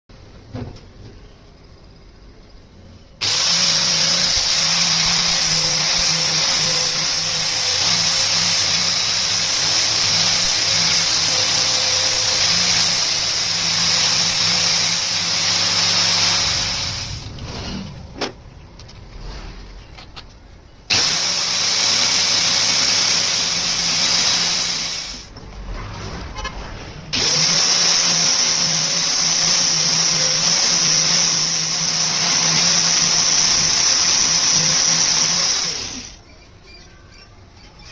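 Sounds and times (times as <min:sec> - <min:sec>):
electric grinder grinding: 0:03.2 - 0:17.3, 0:20.9 - 0:25.3, 0:27.2 - 0:36.2.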